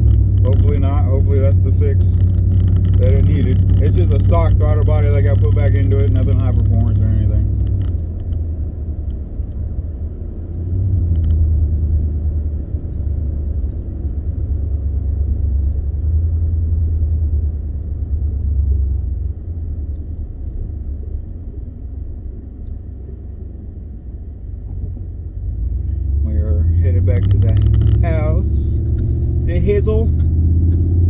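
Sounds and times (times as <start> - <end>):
road noise: 0.0 - 31.0
truck engine rumble: 0.0 - 31.0.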